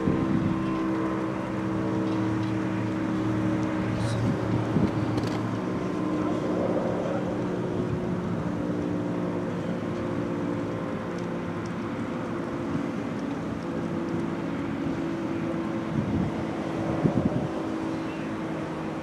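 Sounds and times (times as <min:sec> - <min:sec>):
wind gusts on microphone: 0:00.0 - 0:08.6, 0:12.6 - 0:19.0
warning siren steady low tone: 0:00.0 - 0:12.9.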